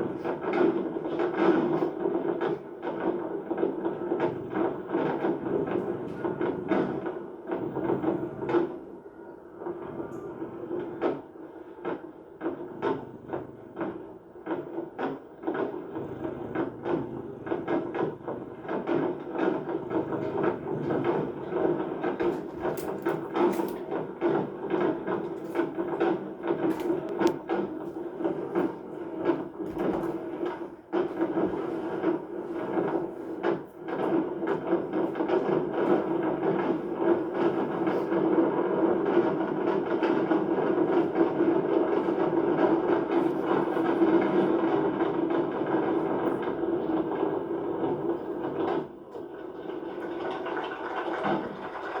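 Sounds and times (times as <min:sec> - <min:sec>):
knocks and rattles: 0:10.7 - 0:52.0
vehicle cabin drone: 0:15.8 - 0:23.5.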